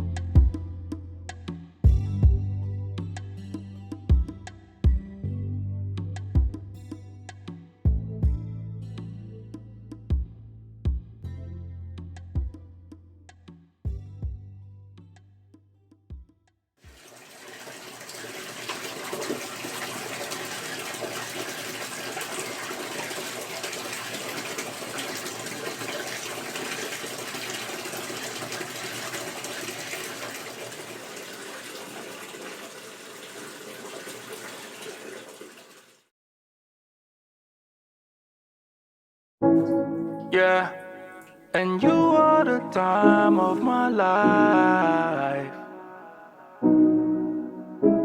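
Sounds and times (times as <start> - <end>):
tap water running into bathtub: 16.8 - 36.1.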